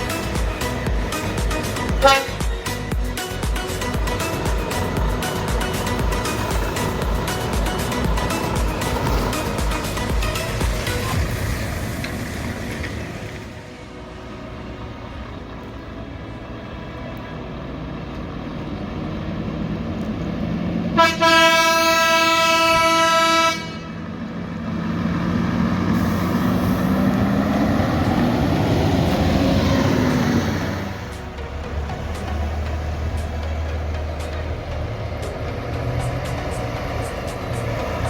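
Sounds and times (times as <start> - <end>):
truck air horn blast: 0.0 - 11.4, 20.9 - 24.3
diesel truck engine accelerating: 0.0 - 38.0.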